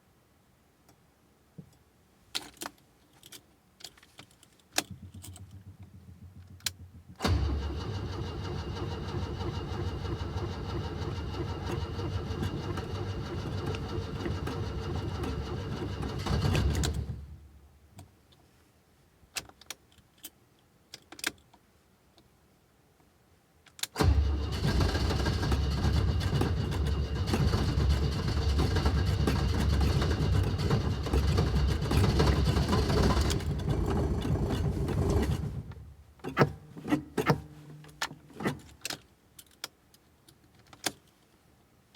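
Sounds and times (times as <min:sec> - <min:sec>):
car engine turning over: 0:04.8 - 0:17.5, 0:24.0 - 0:38.7
car engine running: 0:04.9 - 0:17.4, 0:24.0 - 0:36.1.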